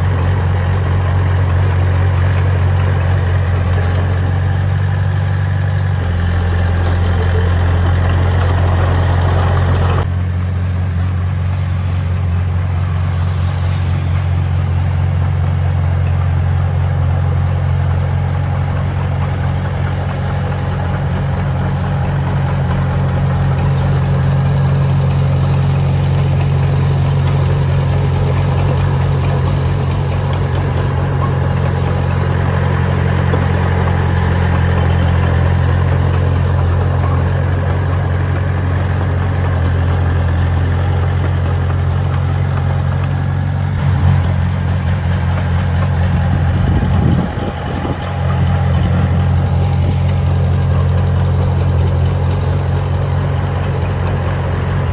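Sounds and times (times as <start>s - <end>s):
heavy diesel engine running: 0.0s - 54.9s.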